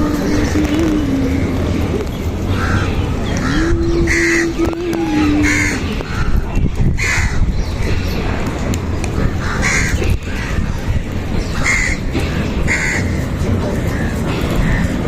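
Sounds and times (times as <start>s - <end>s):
low background rumble: 0.0s - 15.0s
crow cawing: 2.5s - 4.7s, 5.3s - 6.4s, 12.7s - 13.2s.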